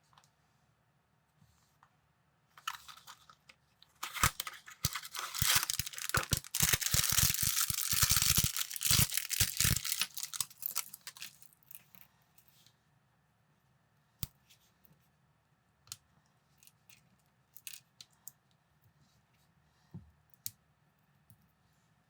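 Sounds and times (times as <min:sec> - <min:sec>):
small plastic bricks clicking: 0:04.0 - 0:11.5
plastic bag tearing and crinkling: 0:04.0 - 0:11.6.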